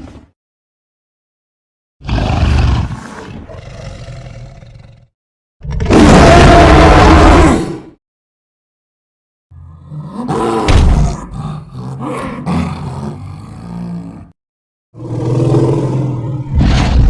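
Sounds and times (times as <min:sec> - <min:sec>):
giant ape roaring: 0:05.6 - 0:07.9, 0:09.6 - 0:14.3, 0:15.0 - 0:17.0.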